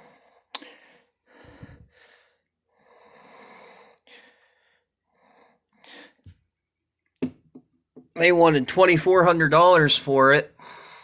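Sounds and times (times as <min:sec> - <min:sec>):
person breathing: 0:00.0 - 0:06.4, 0:10.5 - 0:11.0.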